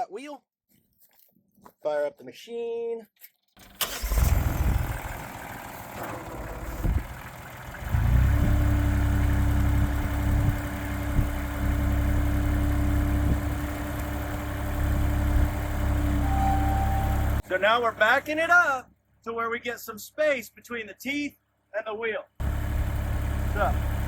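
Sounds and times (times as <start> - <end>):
skid steer engine starting: 3.6 - 18.3, 22.4 - 24.0
skid steer engine idling: 3.6 - 18.6, 22.4 - 24.0
skid steer engine revving with whine: 4.0 - 17.4, 22.4 - 24.0.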